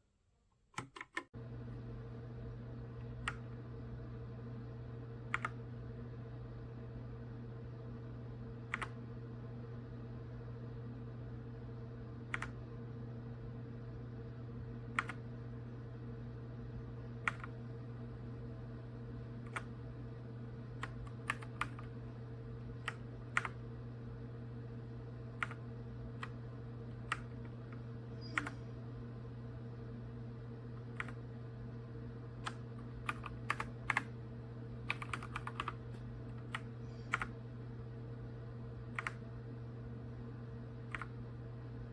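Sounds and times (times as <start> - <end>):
mechanical keyboard keystrokes: 0.8 - 1.3, 5.3 - 5.6, 14.9 - 15.2, 20.8 - 21.9, 32.4 - 34.1, 34.9 - 35.8, 38.9 - 39.2
steady low hum: 0.8 - 41.9.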